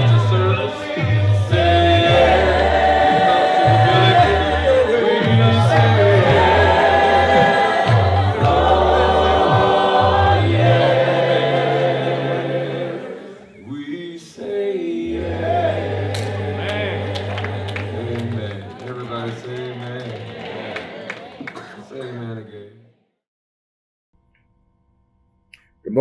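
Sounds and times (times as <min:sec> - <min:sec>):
steady bass line: 0:00.0 - 0:12.2
choir singing held chords: 0:00.0 - 0:22.6.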